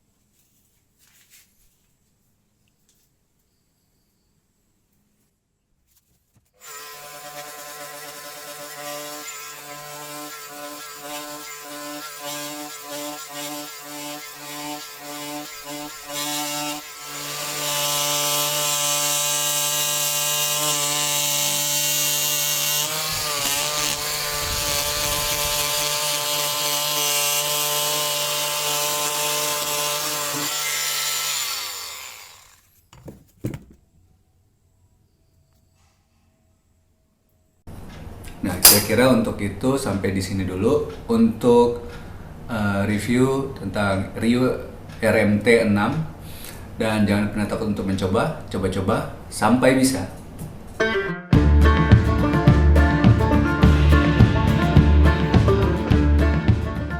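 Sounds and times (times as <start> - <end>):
oscillating multi-tool cutting wood: 6.6 - 33.2
knocks: 32.9 - 33.9.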